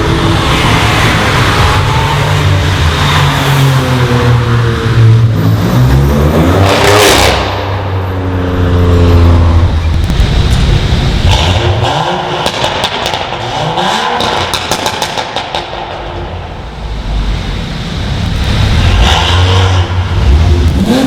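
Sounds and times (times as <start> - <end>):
exhaust pops: 9.7 - 11.8.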